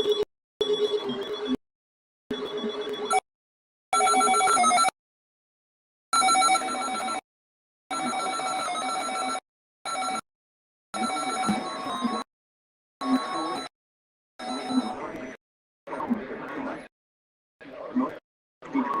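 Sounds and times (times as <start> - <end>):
electronic ringing alert tone: 4.0 - 4.9, 6.2 - 7.2, 7.9 - 10.2, 11.0 - 12.2.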